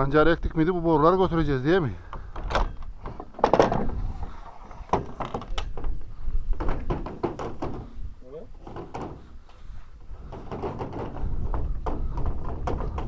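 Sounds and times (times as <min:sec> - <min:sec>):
pipes knocking and clanking: 0:04.9 - 0:08.0, 0:08.6 - 0:09.6, 0:10.2 - 0:13.0.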